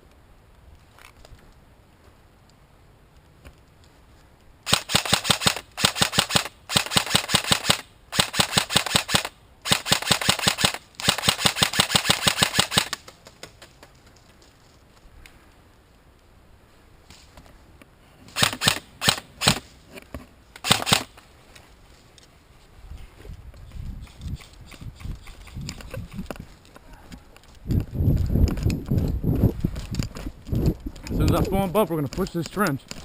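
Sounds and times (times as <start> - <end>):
airsoft gun full-auto bursts: 4.7 - 13.0, 18.4 - 19.6, 20.6 - 21.1.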